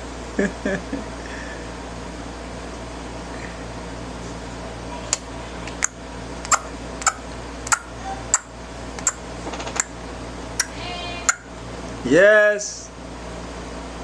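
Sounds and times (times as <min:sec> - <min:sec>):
steady background hum: 0:00.0 - 0:14.0
child clicking tongue: 0:05.8 - 0:09.2.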